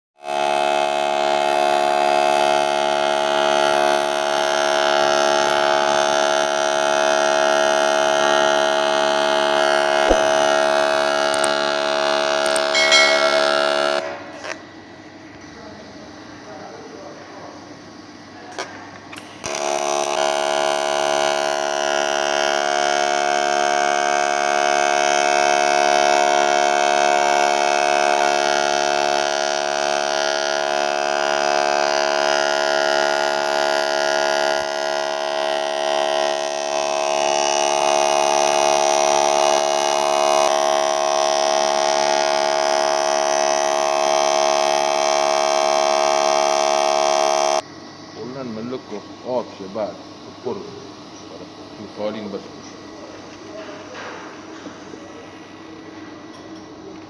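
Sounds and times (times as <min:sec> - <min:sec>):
welding arc buzzing: 0:00.2 - 0:14.6, 0:19.1 - 0:47.6.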